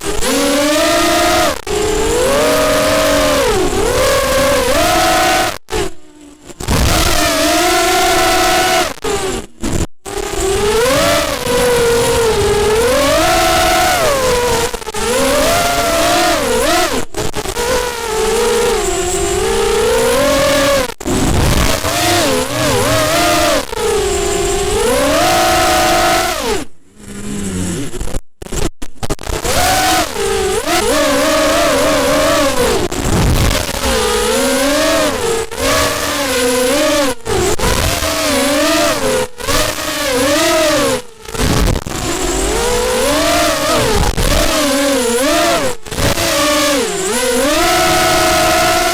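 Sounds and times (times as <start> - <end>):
quadcopter motors whining: 0.0 - 28.2, 29.4 - 48.9.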